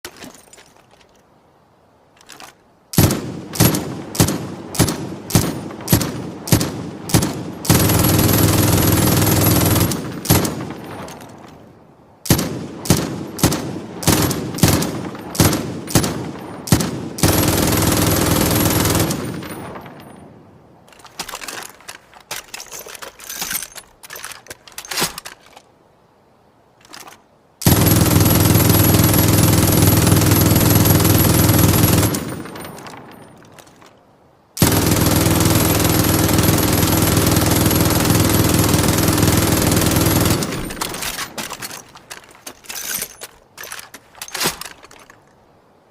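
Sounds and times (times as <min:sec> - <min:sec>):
machine gun firing: 0:03.0 - 0:11.4, 0:12.3 - 0:20.1, 0:27.6 - 0:33.2, 0:34.6 - 0:42.0.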